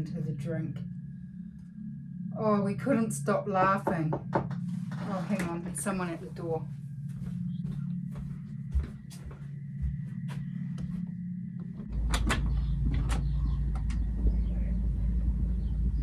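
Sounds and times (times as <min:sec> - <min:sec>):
low outdoor rumble: 0:00.0 - 0:16.0
footsteps: 0:03.6 - 0:11.9
front door opening: 0:10.7 - 0:14.6
door latch clicks: 0:12.0 - 0:14.0.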